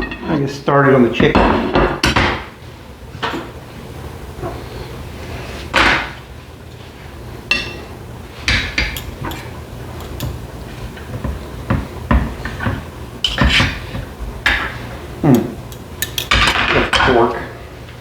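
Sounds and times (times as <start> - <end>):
utensils and dishes clinking: 7.5 - 7.9, 8.7 - 10.4, 14.5 - 17.3.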